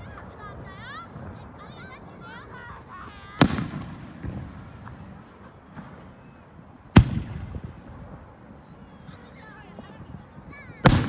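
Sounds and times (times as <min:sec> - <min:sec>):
rumbling echo: 0:03.4 - 0:06.2, 0:07.0 - 0:08.2
firework bang: 0:03.4 - 0:07.9.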